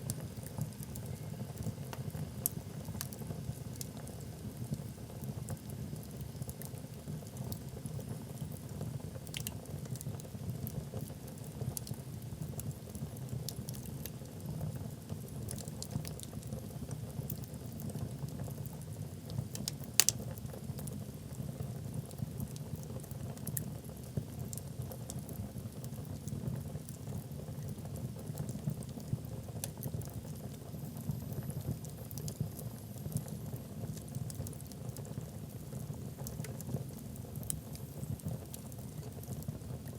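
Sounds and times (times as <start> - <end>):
logs crackling and popping: 9.2 - 14.3, 15.3 - 16.6, 19.3 - 20.9, 31.7 - 39.9.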